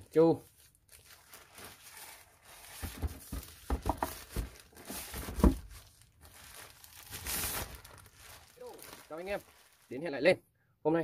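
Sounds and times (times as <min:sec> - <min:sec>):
cardboard box being handled: 0:01.8 - 0:05.9.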